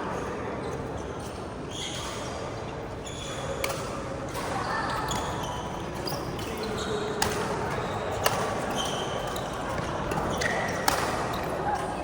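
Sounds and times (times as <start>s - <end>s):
shoes squeaking on court: 4.6s - 12.0s
rackets hitting shuttlecock: 7.2s - 11.8s.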